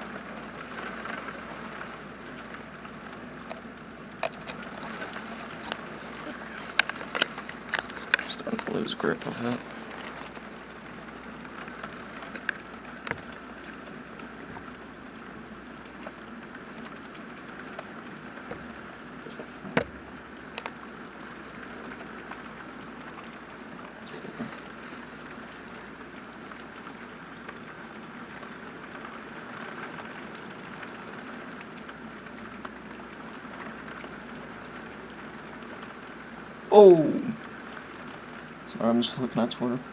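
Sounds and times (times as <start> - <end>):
rain hissing: 0.0 - 39.9
sharp clicks: 4.2 - 10.6.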